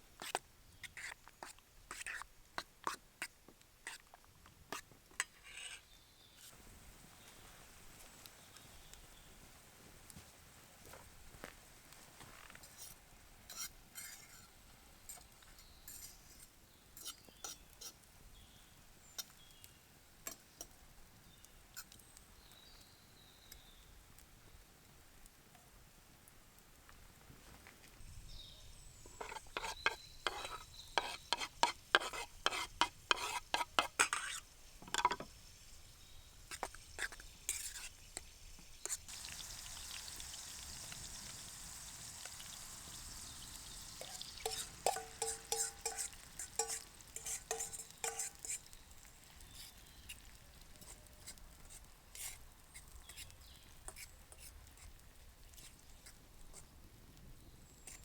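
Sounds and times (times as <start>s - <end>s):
utensil scraping a pan: 5.2s - 6.6s, 12.7s - 14.5s, 29.1s - 35.3s, 36.5s - 38.0s, 43.3s - 48.8s
food sizzling: 32.4s - 54.5s.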